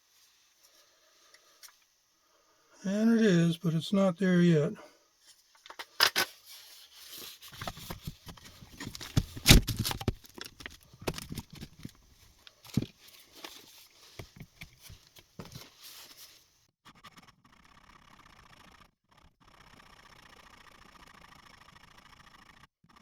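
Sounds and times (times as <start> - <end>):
plastic parts clicking and knocking: 5.5 - 6.4, 7.5 - 15.8.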